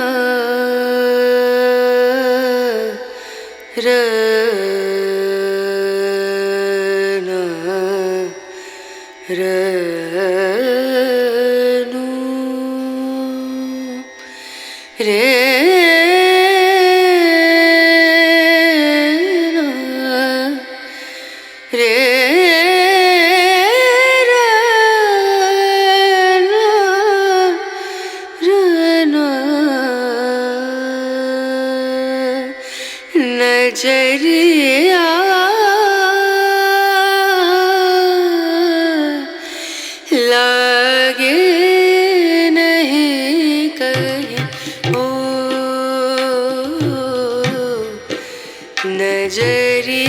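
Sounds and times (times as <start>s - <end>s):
solo sung melody through speaker: 40.3s - 50.0s.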